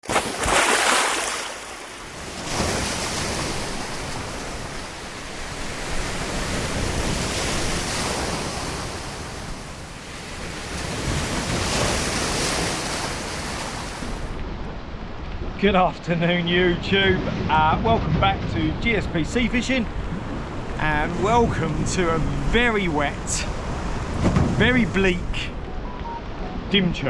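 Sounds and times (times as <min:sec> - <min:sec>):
sea waves breaking on shore: 0:00.0 - 0:27.0
wind buffeting microphone: 0:16.5 - 0:26.7.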